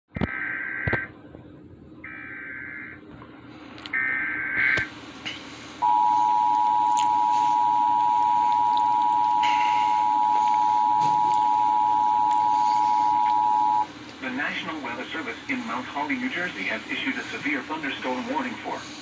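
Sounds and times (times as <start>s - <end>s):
warbling data bursts: 0.2s - 1.1s, 2.0s - 3.0s
two-tone attention signal: 5.8s - 13.9s.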